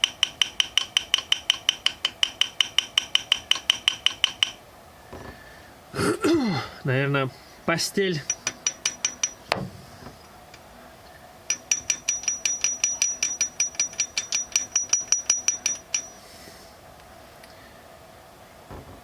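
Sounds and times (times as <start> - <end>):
metallic tapping on engine: 0.0 - 4.6, 8.3 - 9.6, 11.5 - 16.2.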